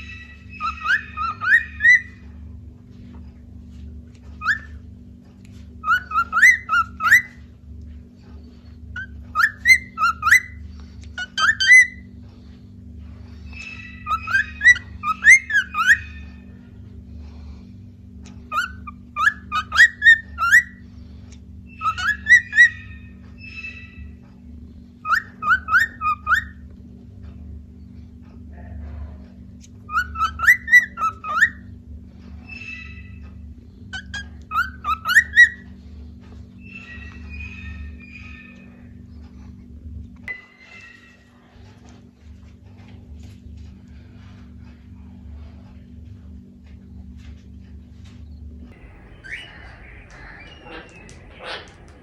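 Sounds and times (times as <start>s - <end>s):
cockatiels whistling: 0.6s - 2.2s, 5.8s - 7.4s, 9.0s - 10.6s, 14.0s - 16.1s, 18.5s - 20.8s, 21.8s - 23.0s, 25.0s - 26.6s, 29.9s - 31.6s, 34.0s - 35.6s.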